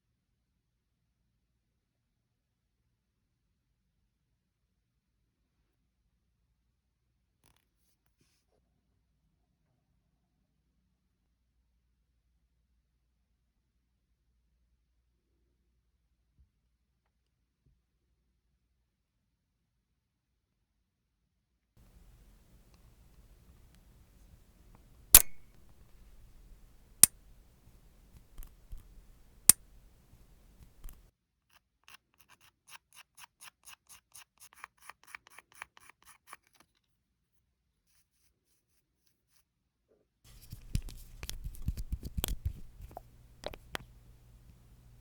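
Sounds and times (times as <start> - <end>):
nail clipper clipping nails: 21.8 - 31.0, 40.3 - 45.0
clicking and scraping: 21.8 - 31.1, 40.3 - 45.0
light quick snips: 21.8 - 31.1, 40.3 - 45.0.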